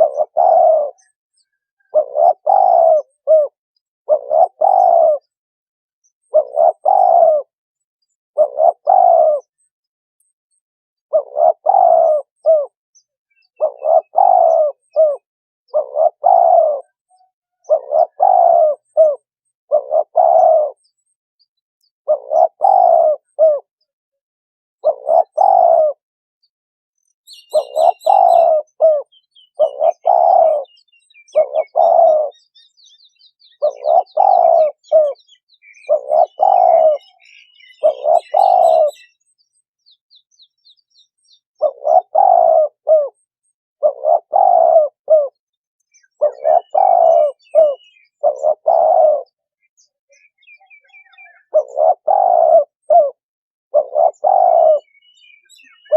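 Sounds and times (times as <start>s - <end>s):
dove cooing: 0.0s - 5.4s, 6.2s - 7.6s, 8.4s - 9.7s, 11.1s - 12.8s, 13.4s - 21.1s, 22.1s - 23.8s, 24.8s - 26.0s, 27.3s - 39.3s, 41.6s - 55.9s
small bird chirping: 0.0s - 5.4s, 6.0s - 23.9s, 27.0s - 53.1s, 53.7s - 55.9s.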